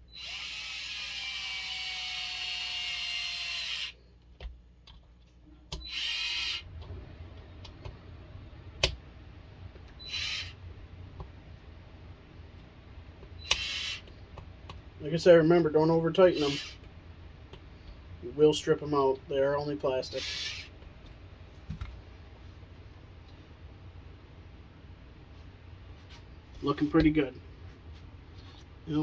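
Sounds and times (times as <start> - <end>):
electric screwdriver driving screws: 0.1 - 4.0, 5.8 - 6.7, 13.4 - 14.0, 16.4 - 16.8.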